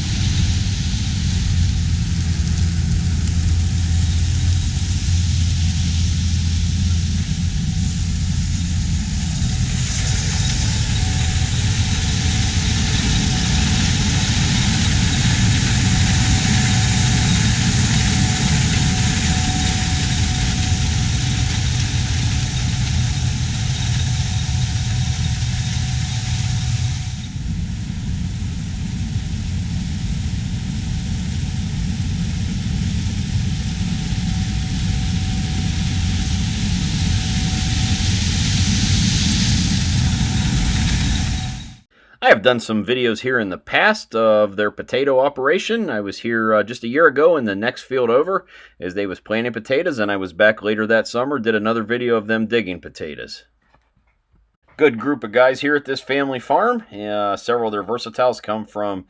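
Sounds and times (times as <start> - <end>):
diesel engine drone: 0.0 - 41.9
hiss of machine and crop: 0.0 - 41.9.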